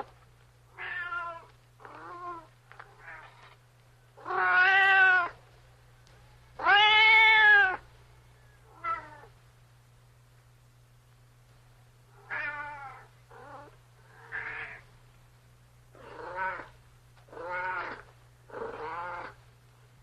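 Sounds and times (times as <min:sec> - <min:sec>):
cat meowing: 0:00.7 - 0:03.4, 0:04.2 - 0:05.4, 0:06.6 - 0:07.8, 0:08.7 - 0:09.3, 0:12.2 - 0:14.8, 0:16.0 - 0:19.4.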